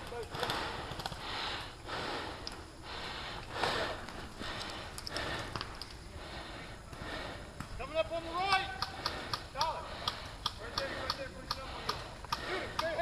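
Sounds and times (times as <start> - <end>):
person breathing heavily: 0.0 - 7.8, 8.7 - 13.0.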